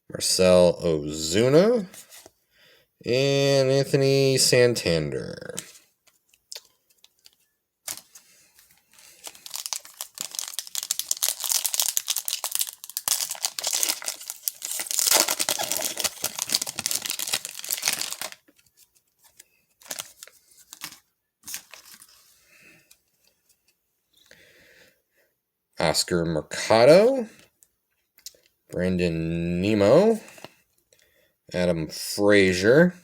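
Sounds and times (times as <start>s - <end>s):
plastic wrapper tearing and crinkling: 6.5s - 8.2s, 8.9s - 18.6s, 19.2s - 22.2s.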